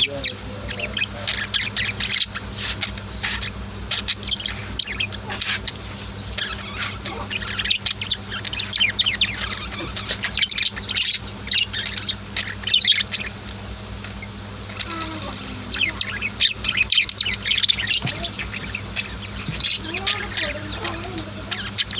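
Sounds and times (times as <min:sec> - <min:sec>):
birds chirping and twittering: 0:00.0 - 0:21.9
steady low hum: 0:00.0 - 0:21.9.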